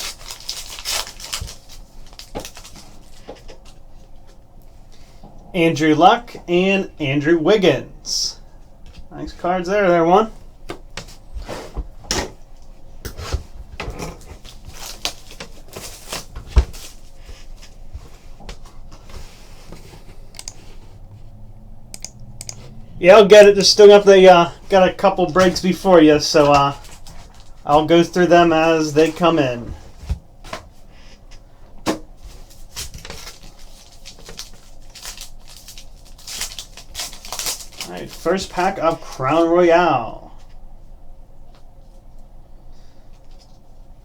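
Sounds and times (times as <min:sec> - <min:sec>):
cards and packaging rustling: 0:00.0 - 0:04.1, 0:14.1 - 0:21.0, 0:22.7 - 0:30.8, 0:32.3 - 0:39.4.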